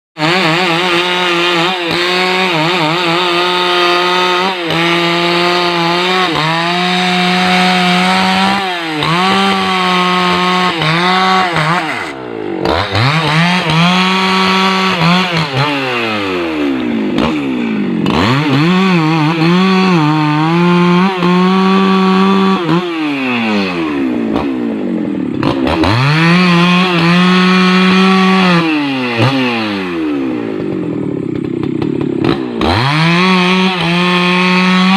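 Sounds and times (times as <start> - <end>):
chainsaw cutting logs: 0.2 - 34.9.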